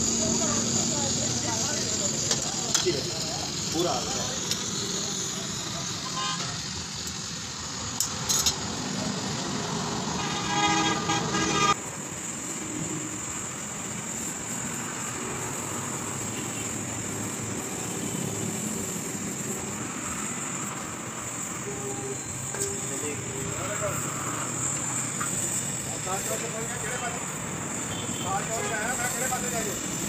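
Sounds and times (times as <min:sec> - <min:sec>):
road traffic noise: 0:00.0 - 0:30.0
vehicle horn: 0:06.0 - 0:06.6, 0:10.2 - 0:11.8, 0:27.9 - 0:28.9.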